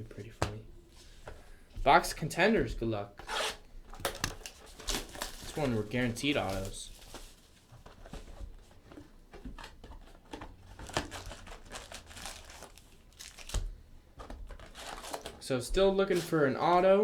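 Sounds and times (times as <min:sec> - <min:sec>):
packaging rustles and clicks: 0:03.9 - 0:16.8
wrapper crinkling and tearing: 0:04.0 - 0:07.7, 0:09.6 - 0:15.4.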